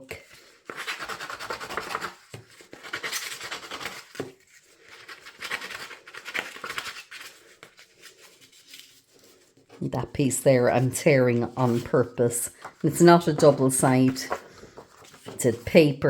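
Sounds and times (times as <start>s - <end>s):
scissor blade scraping paper: 0.6s - 4.1s.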